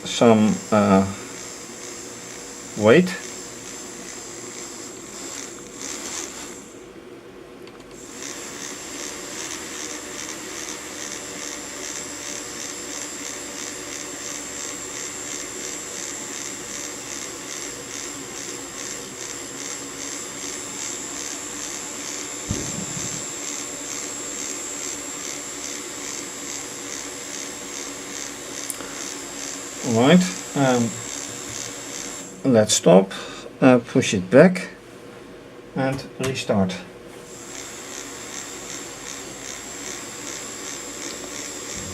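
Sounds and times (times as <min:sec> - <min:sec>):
small electric motor whirring: 0:00.0 - 0:06.8, 0:07.9 - 0:32.4, 0:37.2 - 0:41.9
low thump: 0:22.5 - 0:23.2.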